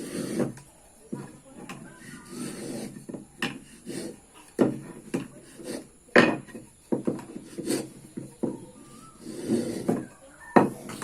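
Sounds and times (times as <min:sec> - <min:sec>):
wood scraping and rubbing: 0:00.0 - 0:11.0
sharp wooden knocks: 0:04.5 - 0:05.4, 0:06.1 - 0:08.8, 0:09.8 - 0:11.0.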